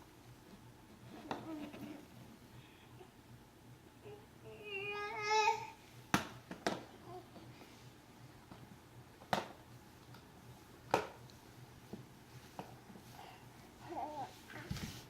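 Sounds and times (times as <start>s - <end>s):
baby babbling: 4.0s - 5.8s, 13.8s - 14.4s.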